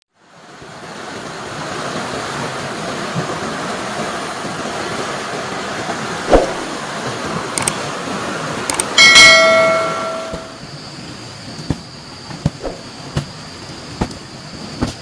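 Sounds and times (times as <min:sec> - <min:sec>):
steady rushing noise: 0:00.4 - 0:15.0
sharp knock: 0:09.0 - 0:10.5.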